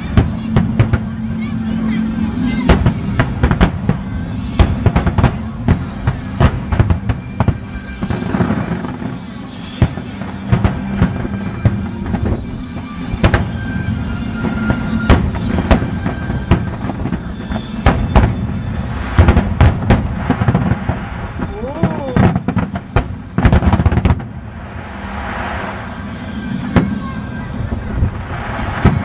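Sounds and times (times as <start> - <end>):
fireworks bursting with sharp bangs: 0.0 - 29.0
low rumble: 10.0 - 29.0.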